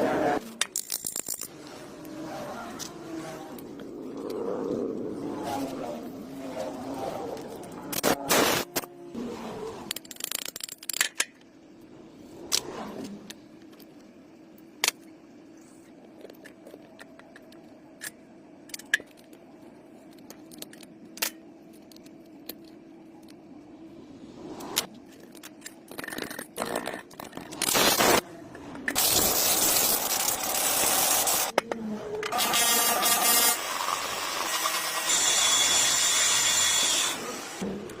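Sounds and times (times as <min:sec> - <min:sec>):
metal parts clicking and scraping: 0:00.4 - 0:04.4, 0:09.7 - 0:11.5, 0:12.4 - 0:23.4, 0:24.6 - 0:33.4.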